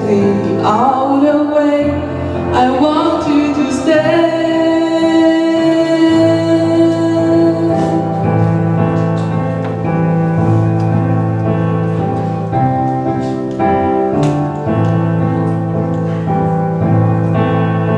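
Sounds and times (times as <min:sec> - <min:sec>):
person singing pop ballad: 0:00.0 - 0:08.6
instrumental accompaniment: 0:00.0 - 0:17.9.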